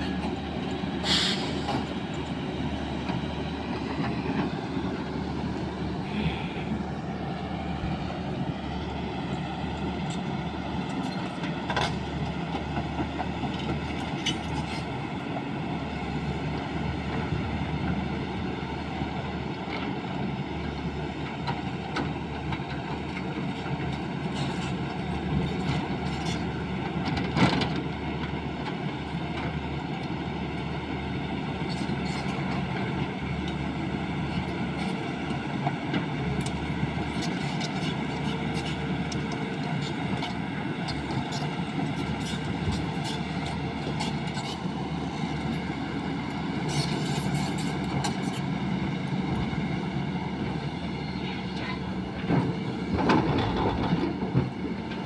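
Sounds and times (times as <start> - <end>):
excavator diesel engine running: 0.0 - 55.0.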